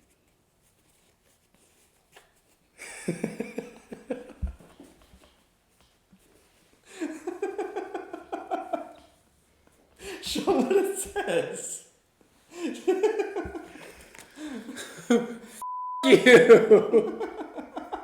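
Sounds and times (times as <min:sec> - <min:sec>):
person laughing: 0:02.8 - 0:04.9, 0:06.9 - 0:09.0, 0:10.0 - 0:11.8, 0:12.5 - 0:18.0.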